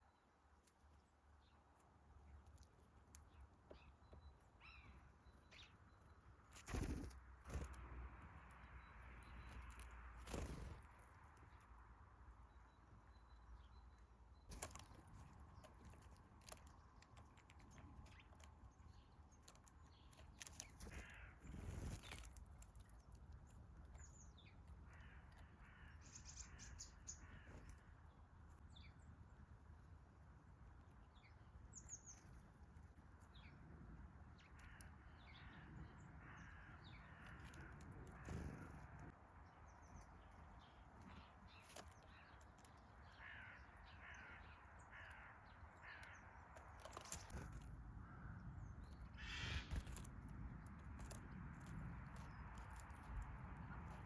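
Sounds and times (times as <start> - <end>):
small songbird chirps: 0.0 - 29.9, 30.6 - 54.0
harsh rasping bird screeches: 49.1 - 50.0.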